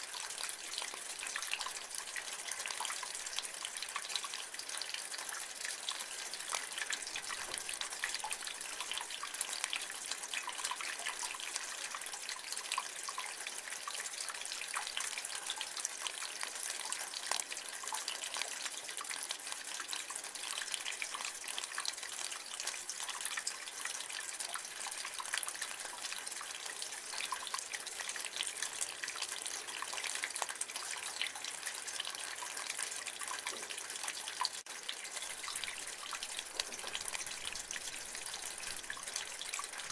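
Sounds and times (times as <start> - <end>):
rain water running from gutter: 0.0 - 39.9.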